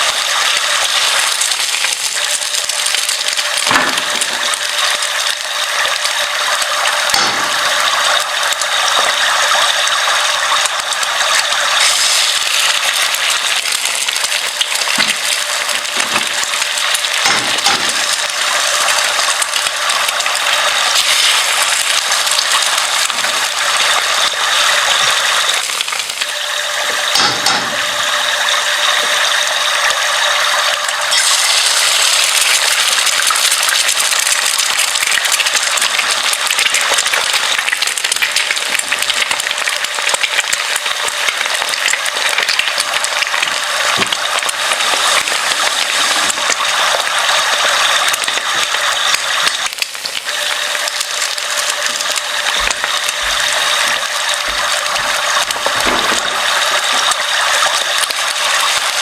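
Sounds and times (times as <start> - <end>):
small hard objects rattling and clinking: 51.8 - 59.0.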